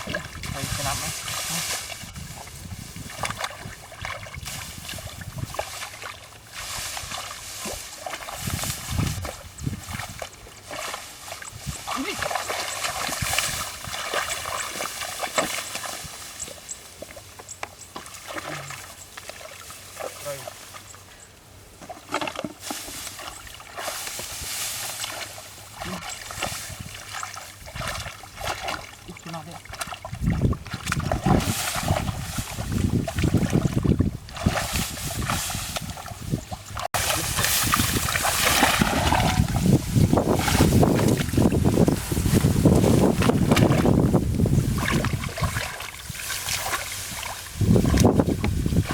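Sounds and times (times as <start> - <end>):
wind noise on microphone: 0.0 - 16.6, 25.8 - 28.8, 29.7 - 48.9
splashes in muddy water: 0.0 - 17.3, 18.0 - 20.9, 21.9 - 48.9.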